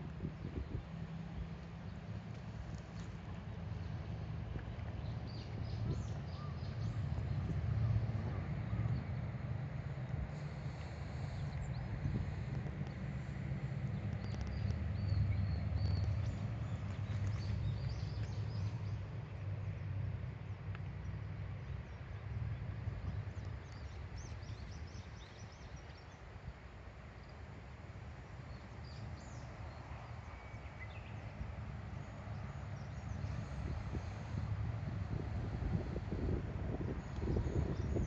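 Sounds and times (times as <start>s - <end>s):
wind buffeting microphone: 0.0s - 19.8s, 28.5s - 38.0s
small birds chirping: 3.7s - 9.0s, 10.0s - 19.8s.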